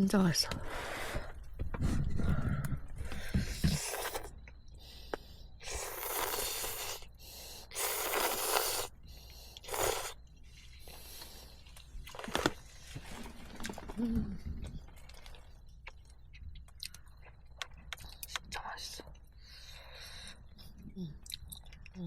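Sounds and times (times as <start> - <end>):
person slurping noodles: 3.5 - 4.3, 5.6 - 7.1, 7.7 - 9.0, 9.6 - 10.2.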